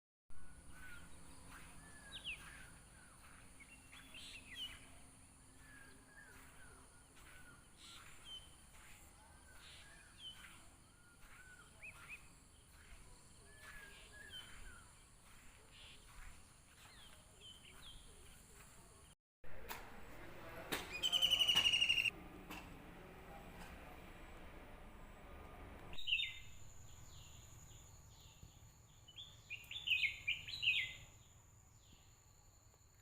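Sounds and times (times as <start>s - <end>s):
birds chirping and whistling: 0.4s - 18.0s, 20.9s - 22.1s, 26.0s - 28.4s, 29.1s - 31.0s.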